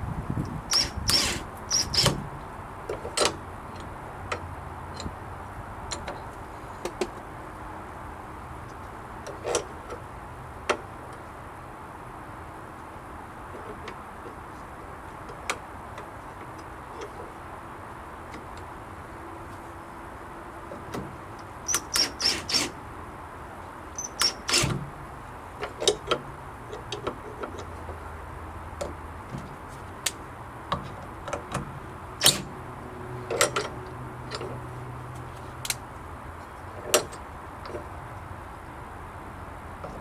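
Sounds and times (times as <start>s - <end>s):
latch clicks and knocks at wooden gate: 24.0s - 28.0s, 28.8s - 32.6s, 36.8s - 37.9s.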